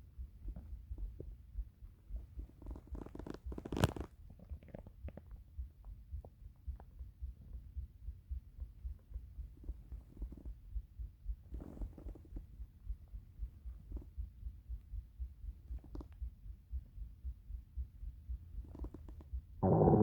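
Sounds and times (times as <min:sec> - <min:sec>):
stomach rumbling and gurgling: 0:02.1 - 0:06.9, 0:18.6 - 0:20.0
steady low throbbing: 0:19.6 - 0:20.0.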